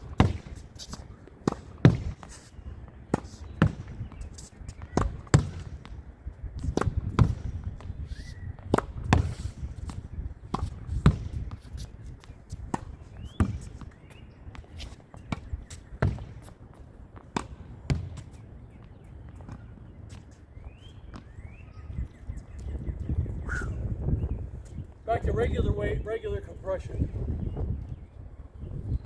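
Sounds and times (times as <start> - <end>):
ball bouncing on court: 0.1 - 2.4, 3.1 - 4.2, 4.8 - 6.0, 6.6 - 7.9, 8.6 - 16.5, 17.2 - 18.4
racket striking ball: 0.1 - 4.1, 4.8 - 6.0, 6.6 - 8.0, 8.6 - 16.6, 17.2 - 18.4.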